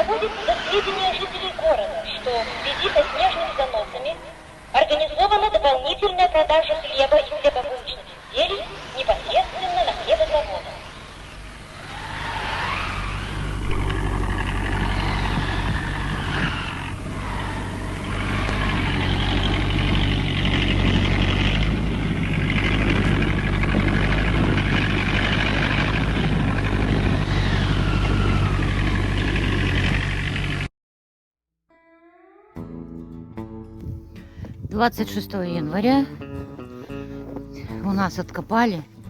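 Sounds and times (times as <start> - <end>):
vehicle engine revving: 0.0 - 30.7.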